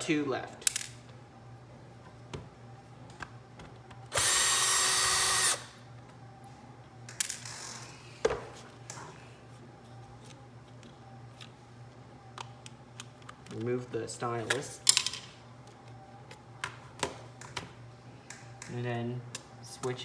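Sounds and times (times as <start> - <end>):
electric drill motor: 4.1 - 5.8.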